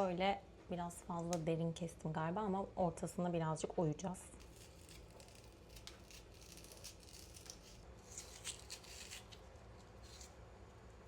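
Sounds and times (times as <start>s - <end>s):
utensil scraping onion: 4.4s - 10.4s.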